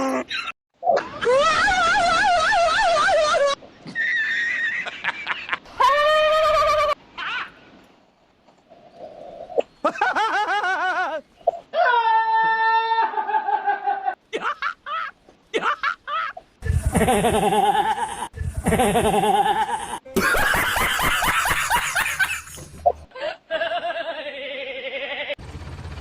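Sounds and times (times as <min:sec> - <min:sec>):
overlapping laughter: 0:00.3 - 0:07.5, 0:13.2 - 0:25.4
laughing sound effects: 0:13.6 - 0:25.4.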